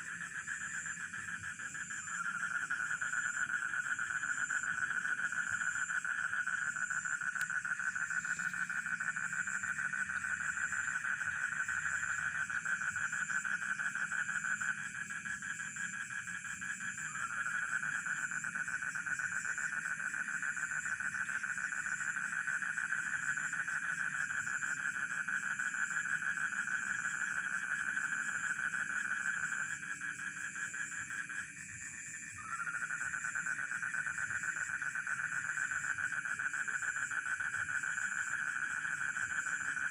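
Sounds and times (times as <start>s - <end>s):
crickets chirping: 0.0s - 39.9s
frogs calling: 0.0s - 39.9s.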